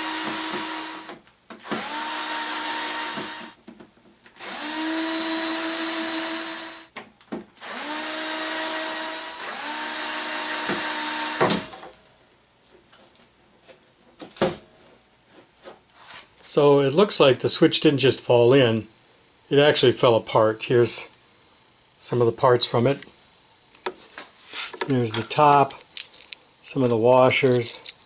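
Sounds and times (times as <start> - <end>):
power drill motor whine: 0.0 - 3.6, 4.4 - 6.9, 7.6 - 11.8.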